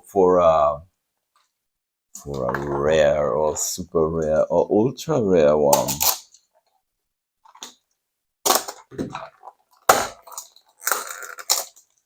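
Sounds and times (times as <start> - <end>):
toy packaging crackling and rustling: 8.5 - 12.0.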